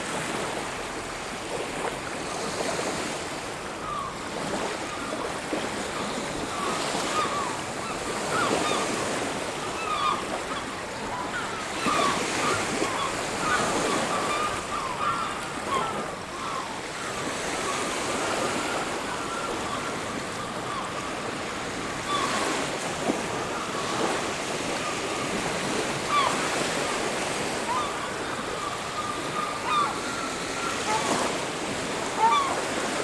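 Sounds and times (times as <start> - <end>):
high bird calls: 27.6 - 32.7.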